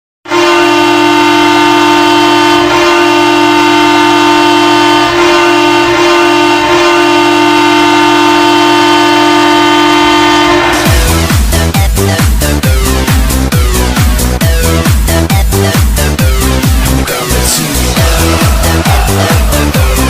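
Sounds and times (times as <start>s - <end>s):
arena goal horn blast: 0.3s - 11.4s, 16.2s - 20.0s.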